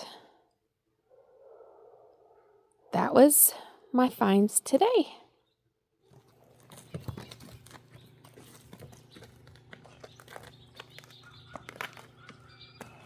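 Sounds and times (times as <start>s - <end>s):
horse hooves clicking and knocking: 6.1s - 13.0s.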